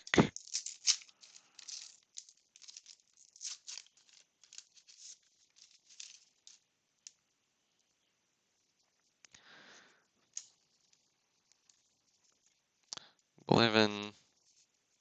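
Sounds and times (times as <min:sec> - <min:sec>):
wrapper crinkling and tearing: 0:00.0 - 0:06.7
cards rustling: 0:00.0 - 0:07.2.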